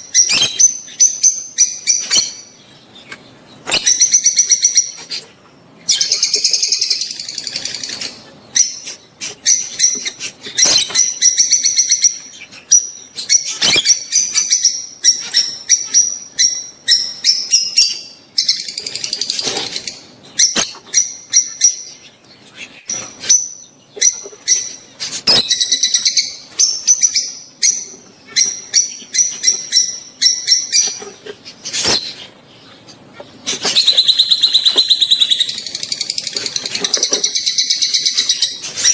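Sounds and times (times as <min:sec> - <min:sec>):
lovebirds chirping: 0:00.0 - 0:38.9.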